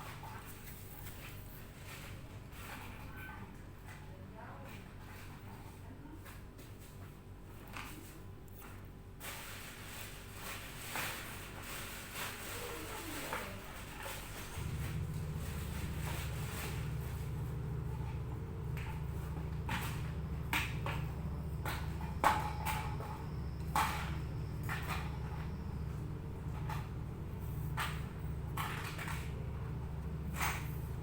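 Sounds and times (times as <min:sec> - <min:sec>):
steady low hum: 0:13.8 - 0:31.0.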